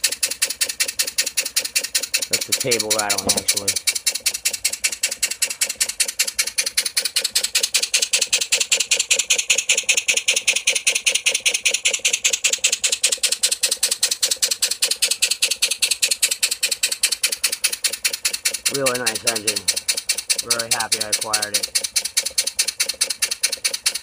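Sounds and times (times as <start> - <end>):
steam engine exhaust chuffs: 0.0 - 24.0
table rattling: 1.6 - 7.8.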